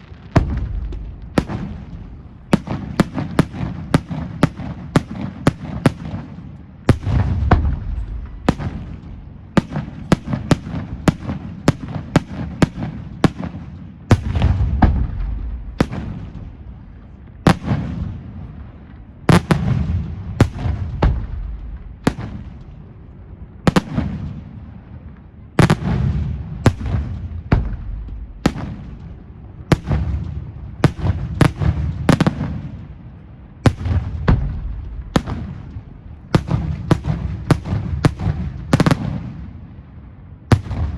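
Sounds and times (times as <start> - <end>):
deep booms echoing: 0.0 - 2.5, 6.9 - 9.2, 14.1 - 16.6, 19.7 - 22.6, 25.8 - 29.1, 33.7 - 38.5.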